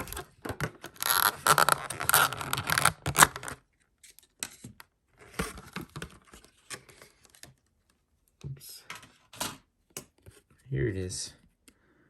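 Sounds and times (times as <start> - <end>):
packaging rustling and crinkling: 0.0 - 3.6.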